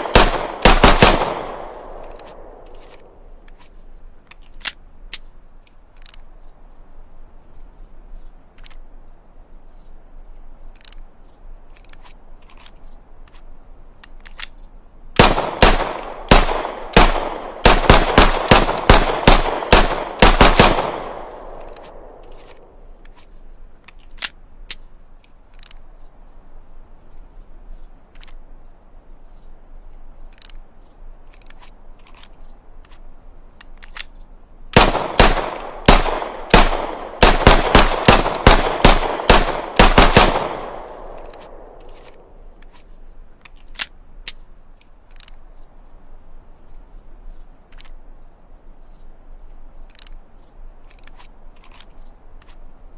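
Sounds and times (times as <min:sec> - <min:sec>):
pistol firing rapid shots: 0:00.0 - 0:02.6, 0:15.2 - 0:22.2, 0:34.8 - 0:41.8.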